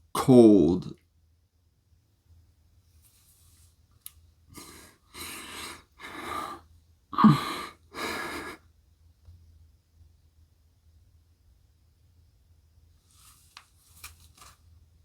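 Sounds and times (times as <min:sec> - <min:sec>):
person breathing heavily: 0:04.5 - 0:08.6.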